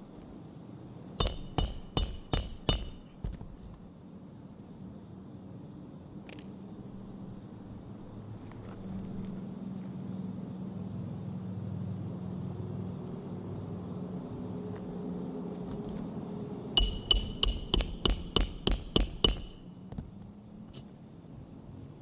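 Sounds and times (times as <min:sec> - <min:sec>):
hammer driving a nail: 0:01.2 - 0:03.2, 0:16.8 - 0:19.7.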